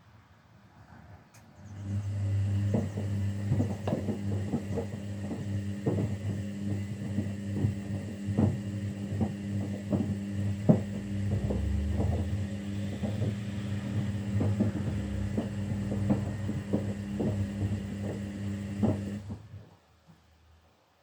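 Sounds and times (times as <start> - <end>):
washing machine motor humming: 1.6 - 19.8
laundry thudding in drum: 2.7 - 19.6.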